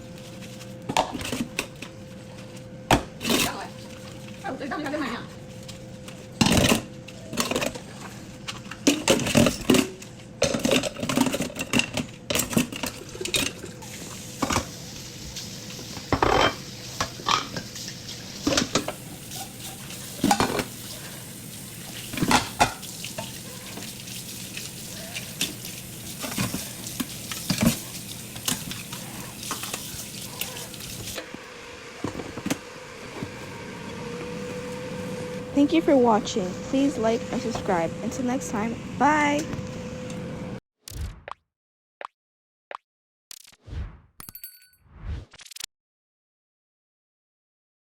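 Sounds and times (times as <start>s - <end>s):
dishes and utensils clattering: 8.6s - 13.7s, 16.1s - 17.7s, 18.4s - 21.1s, 22.1s - 24.0s.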